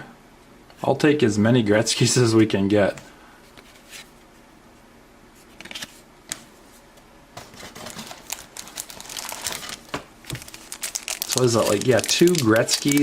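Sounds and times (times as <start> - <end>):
cardboard cards being flipped: 5.6 - 6.4.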